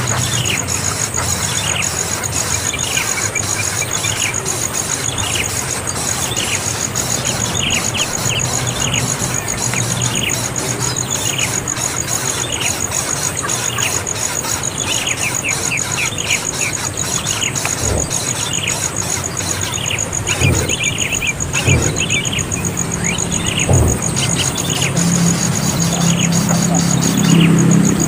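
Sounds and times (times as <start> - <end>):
low thumps: 4.8 - 13.0, 14.6 - 28.0.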